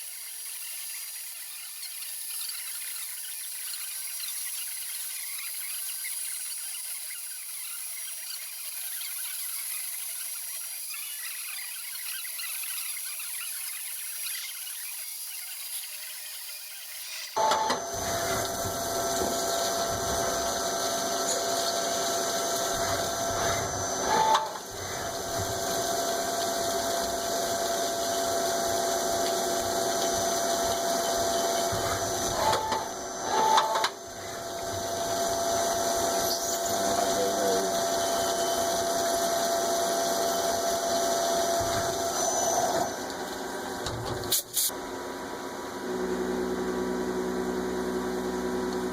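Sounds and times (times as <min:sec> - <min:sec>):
electric machine tool whining: 0:13.6 - 0:44.2.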